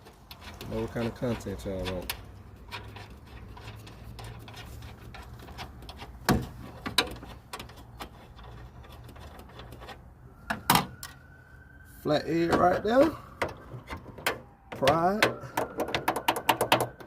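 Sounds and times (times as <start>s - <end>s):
hand tools clicking and tapping: 13.4s - 17.0s.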